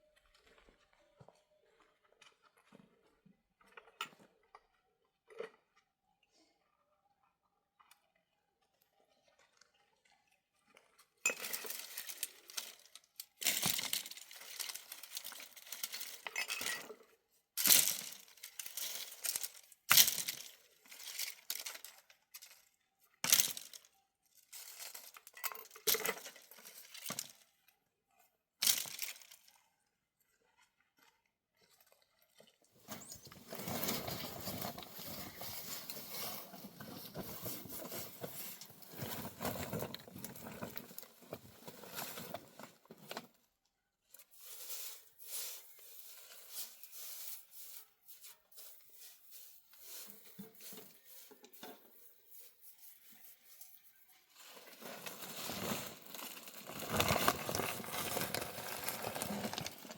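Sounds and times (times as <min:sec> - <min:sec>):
hard objects clinking and rattling: 0:11.3 - 0:23.9, 0:24.6 - 0:27.4, 0:54.7 - 0:59.9.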